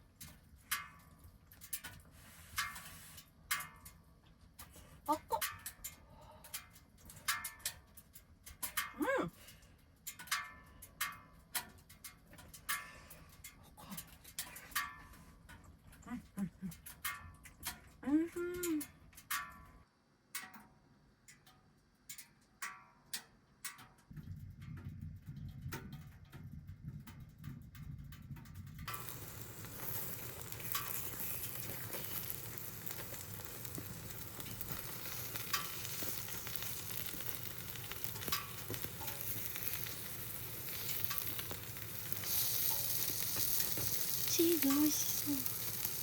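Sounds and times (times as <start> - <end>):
gas stove burner rushing: 28.8 - 46.0
food sizzling in a pan: 28.9 - 46.0.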